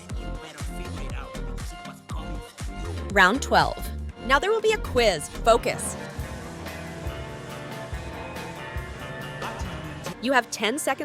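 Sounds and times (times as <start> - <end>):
upbeat music with guitar: 0.0 - 11.0
steady drum beat: 2.6 - 10.2.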